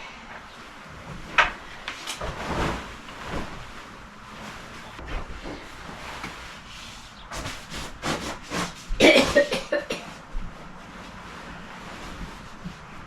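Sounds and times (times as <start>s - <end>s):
bed linen rustling: 0.3s - 13.0s
cough: 9.0s - 10.2s.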